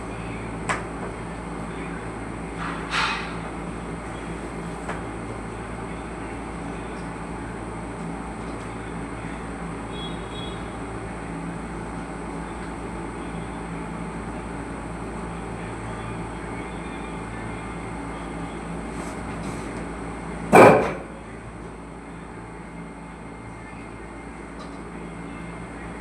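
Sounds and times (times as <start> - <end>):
faint hum: 0.0 - 2.7, 3.4 - 26.0
loud thump: 20.5 - 21.1.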